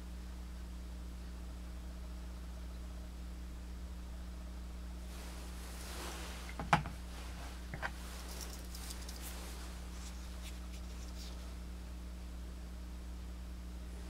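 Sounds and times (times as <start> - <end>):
low electrical hum: 0.0 - 14.0
soft rustle: 5.0 - 11.8.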